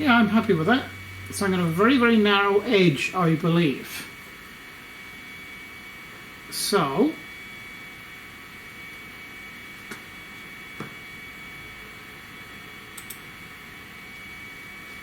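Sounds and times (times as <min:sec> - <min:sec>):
electrical hum and hiss: 0:00.0 - 0:15.0
computer mouse clicks: 0:13.0 - 0:13.3.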